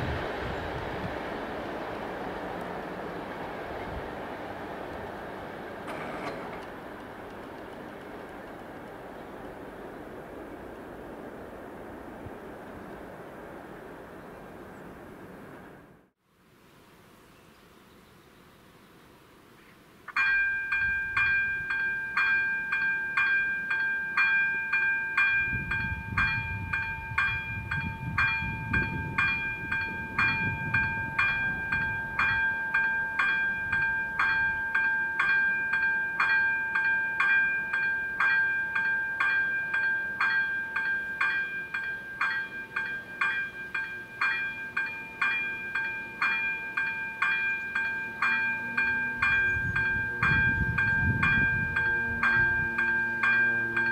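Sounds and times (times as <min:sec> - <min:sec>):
pulsing high-pitched ringing tone: 0:24.8 - 0:53.9.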